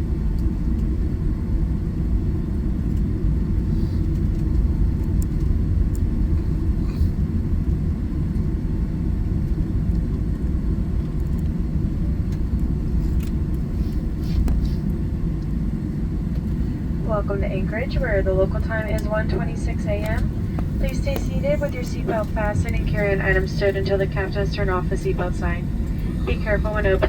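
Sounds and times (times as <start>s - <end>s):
aircraft cabin rumble: 0.0s - 27.0s.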